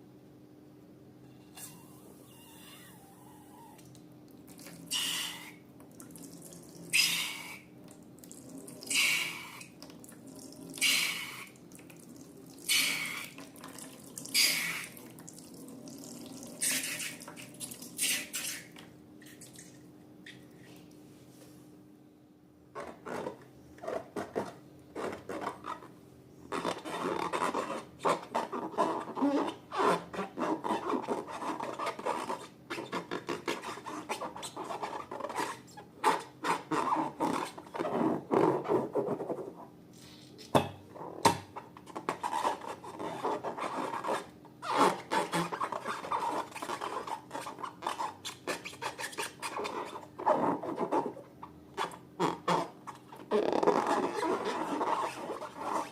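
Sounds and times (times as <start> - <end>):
slime rubbing: 51.8 - 55.9.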